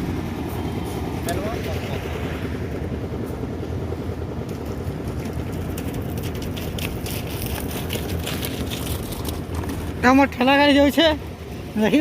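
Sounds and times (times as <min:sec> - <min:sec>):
engine droning: 0:00.0 - 0:12.0
sharp clicks and clatter: 0:04.4 - 0:09.9.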